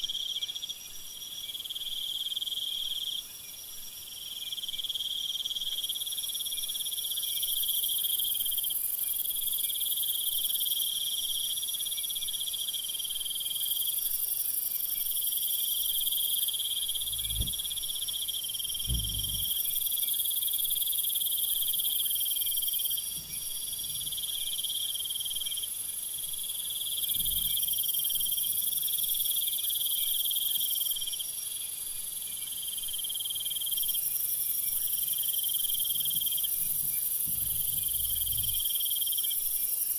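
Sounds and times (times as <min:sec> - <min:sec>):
crickets chirring: 0:04.2 - 0:39.9
soft low thuds: 0:16.9 - 0:19.7, 0:36.7 - 0:38.6.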